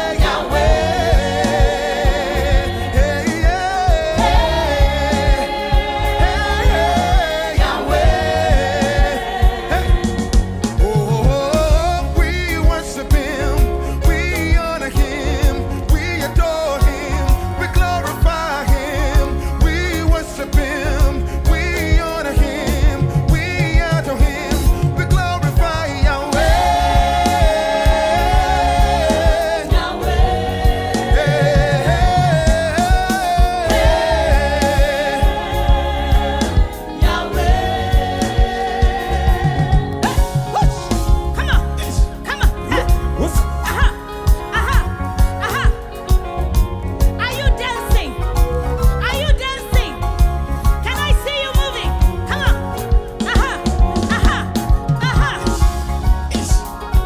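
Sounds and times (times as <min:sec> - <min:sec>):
choir singing: 0:00.0 - 0:46.3
lead voice singing: 0:00.0 - 0:57.0
steady drum beat: 0:00.0 - 0:57.0.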